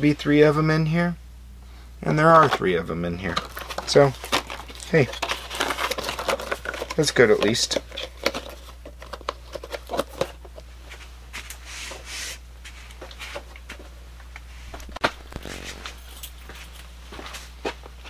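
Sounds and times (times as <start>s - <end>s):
low steady hum: 0.0s - 18.0s
packaging rustling: 3.3s - 10.6s.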